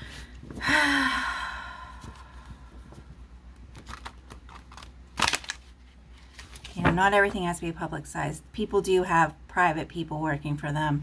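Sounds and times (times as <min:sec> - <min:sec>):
person sighing: 0:00.6 - 0:02.5.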